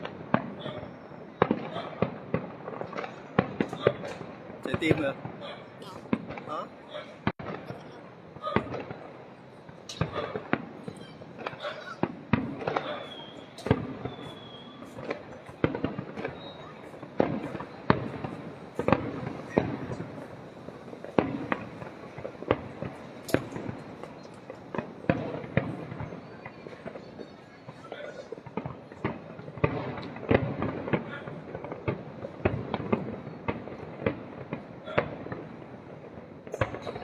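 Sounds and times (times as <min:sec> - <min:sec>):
fireworks bangs: 0:00.0 - 0:37.0
rumble of overlapping explosions: 0:15.6 - 0:27.8.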